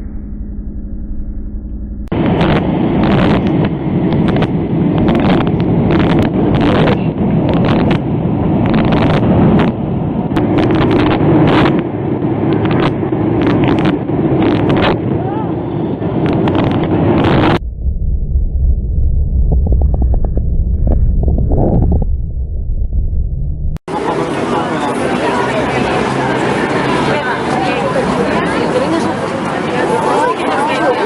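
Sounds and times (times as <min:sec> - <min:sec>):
rough rumble with sharp knocks: 0:00.0 - 0:15.0, 0:16.2 - 0:23.8
aircraft engine drone: 0:00.0 - 0:31.0.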